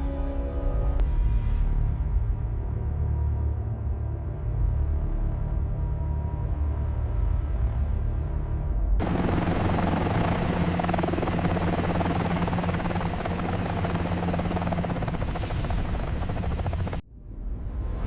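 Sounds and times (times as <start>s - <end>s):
helicopter engine and rotor: 9.0s - 17.0s.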